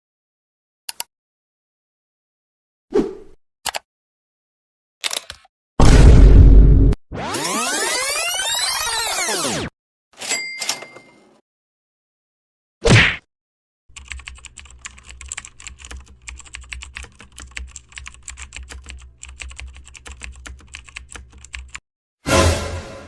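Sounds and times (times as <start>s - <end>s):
rapid typing on keyboard: 13.9s - 21.8s.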